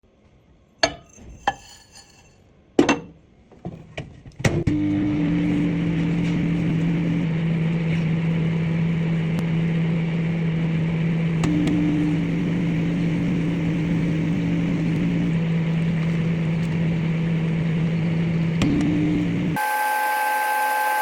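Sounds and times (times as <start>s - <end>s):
microwave oven humming: 4.5s - 21.0s.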